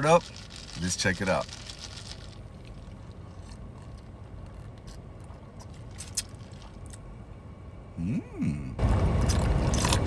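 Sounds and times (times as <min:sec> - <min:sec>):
person humming: 0:08.0 - 0:08.8.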